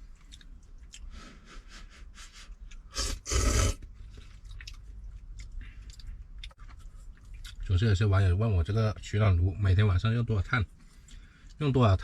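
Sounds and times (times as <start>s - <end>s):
person chewing: 0.0s - 1.6s, 2.4s - 7.6s.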